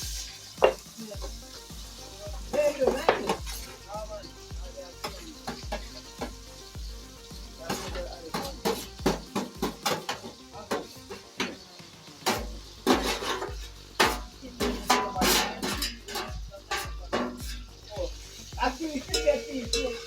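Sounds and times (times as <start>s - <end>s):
background music: 0.0s - 20.0s
food sizzling in a pot: 0.0s - 20.0s
spoon stirring and clicking on pot: 7.7s - 17.8s.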